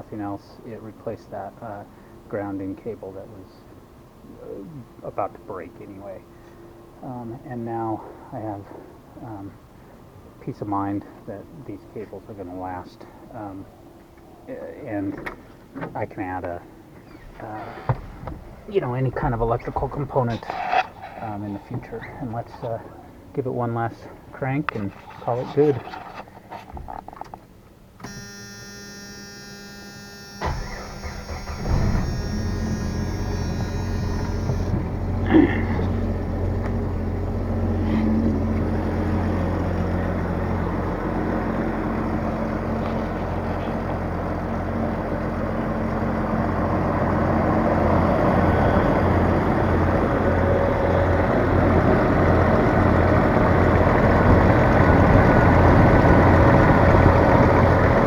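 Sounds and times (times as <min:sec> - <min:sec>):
steady tone: 0:28.0 - 0:34.8
engine starter cranking: 0:28.0 - 0:34.9
car engine idling: 0:28.0 - 0:42.9.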